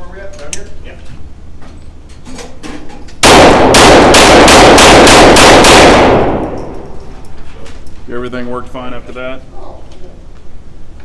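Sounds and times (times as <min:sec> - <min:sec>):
pistol shots in rapid string: 0:03.2 - 0:07.0.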